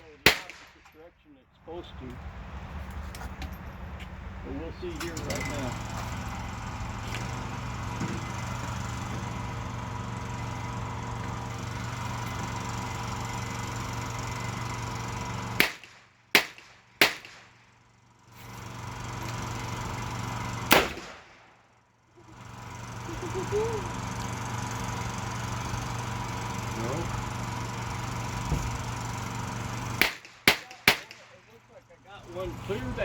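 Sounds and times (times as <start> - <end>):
sharp gunshots: 0.0 - 1.0, 15.6 - 17.6, 20.7 - 21.5, 30.0 - 31.5.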